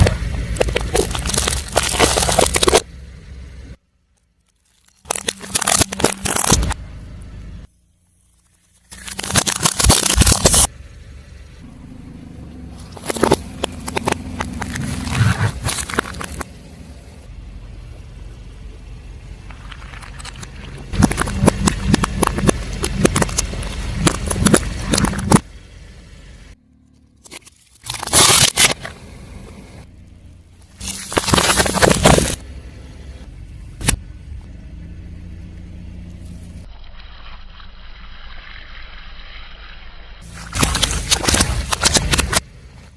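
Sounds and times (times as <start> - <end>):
tyre crushing brittle objects: 0.0 - 2.9, 4.4 - 6.8, 8.4 - 10.7, 12.8 - 16.5, 19.5 - 25.4, 27.2 - 28.9, 30.7 - 32.4, 40.2 - 42.4
car engine running: 0.0 - 36.7, 40.2 - 42.9.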